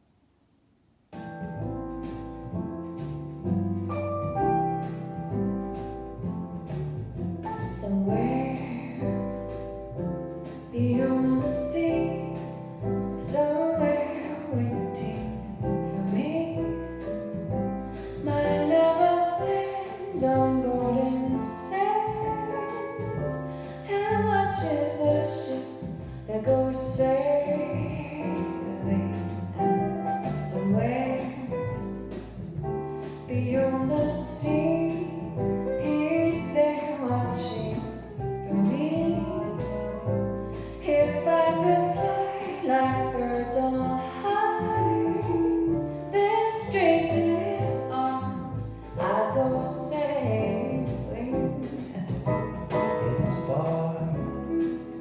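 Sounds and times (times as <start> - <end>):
piano and band music: 1.1 - 55.0
woman singing: 7.7 - 9.4, 10.7 - 12.5, 13.2 - 16.8, 18.2 - 31.9, 33.3 - 39.9, 40.5 - 55.0.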